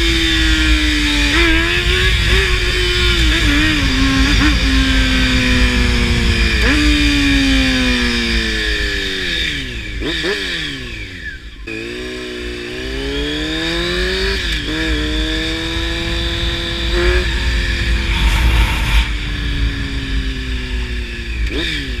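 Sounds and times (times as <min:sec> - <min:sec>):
motorcycle engine revving: 0:00.0 - 0:22.0
wind rushing: 0:15.8 - 0:21.2.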